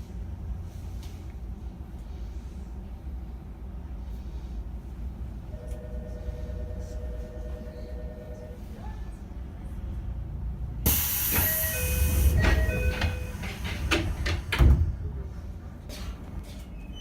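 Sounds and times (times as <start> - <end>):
loud hiss of air: 10.9 - 12.4.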